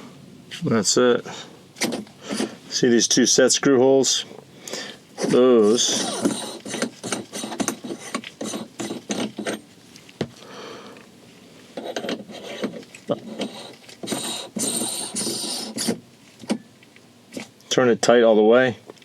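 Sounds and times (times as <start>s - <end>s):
metal parts clicking and scraping: 5.2s - 10.1s, 11.8s - 17.5s.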